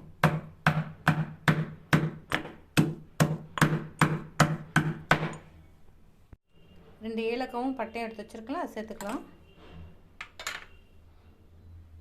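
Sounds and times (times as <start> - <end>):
pestle pounding in a mortar: 0.0 - 5.4.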